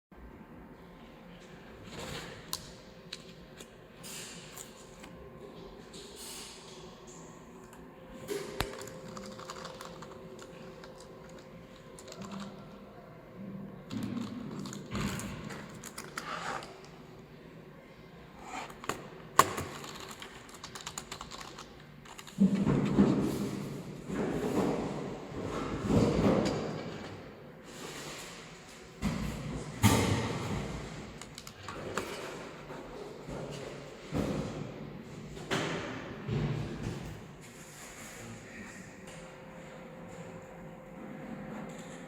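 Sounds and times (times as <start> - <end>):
typing on computer keyboard: 8.6 - 12.7, 19.4 - 22.4.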